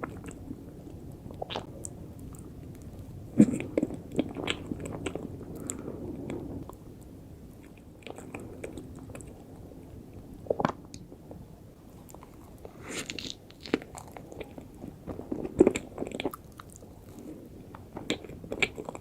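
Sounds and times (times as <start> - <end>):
person chewing: 1.4 - 5.8, 12.1 - 19.0.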